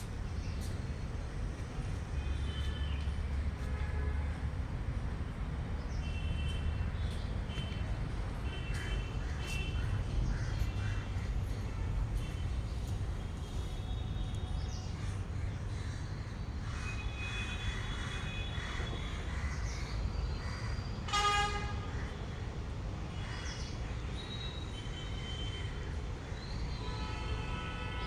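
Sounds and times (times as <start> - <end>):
train horn toot: 21.1 - 21.9, 26.8 - 28.0.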